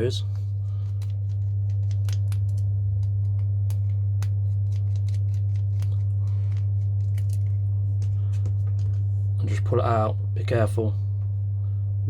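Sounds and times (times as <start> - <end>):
loud steady low hum: 0.0 - 12.0
small parts being handled: 0.8 - 9.1.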